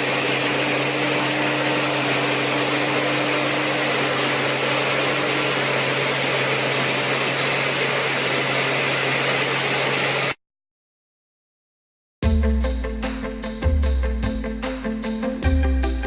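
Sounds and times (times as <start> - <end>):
machine humming: 0.0 - 10.4.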